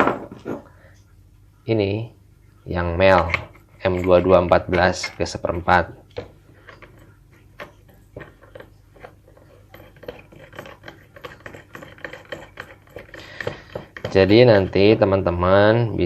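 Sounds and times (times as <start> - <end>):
metal fittings clicking and rubbing: 3.1 - 15.1.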